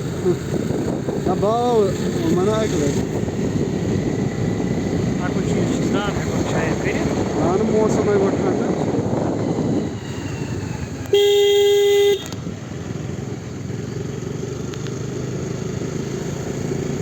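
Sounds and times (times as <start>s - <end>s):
engine and road noise: 0.0s - 17.0s
vehicle horn toot: 11.1s - 12.4s.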